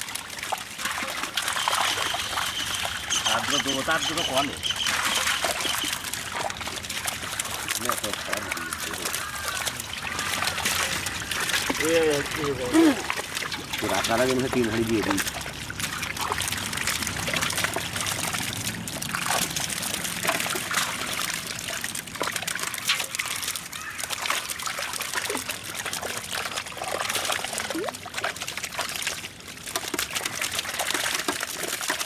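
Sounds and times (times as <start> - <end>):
water trickling and splashing: 0.0 - 32.0.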